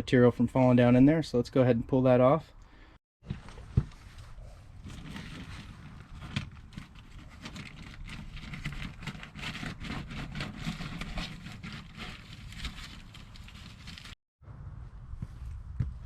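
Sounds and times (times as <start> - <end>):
plastic sheeting rustling: 4.0 - 14.2.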